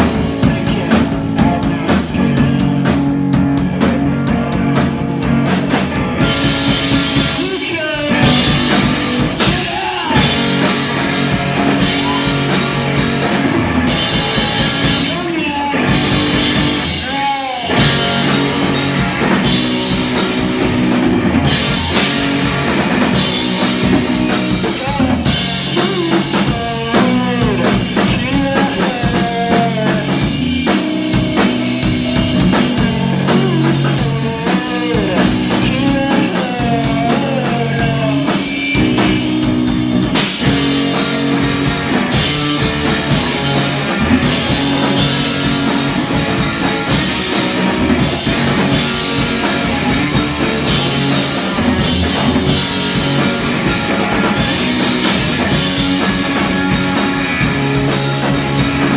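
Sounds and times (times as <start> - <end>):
live rock band playing: 0.0 - 58.9.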